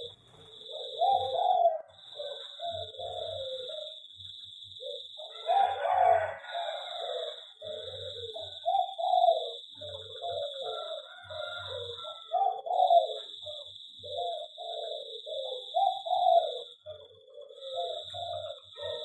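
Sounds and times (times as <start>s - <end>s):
doves cooing: 0.0s - 19.0s.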